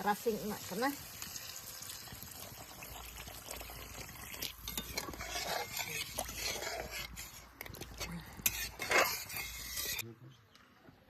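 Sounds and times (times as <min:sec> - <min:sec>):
liquid sloshing in a pot: 0:01.1 - 0:10.0
spoon scraping and clicking: 0:04.4 - 0:10.0.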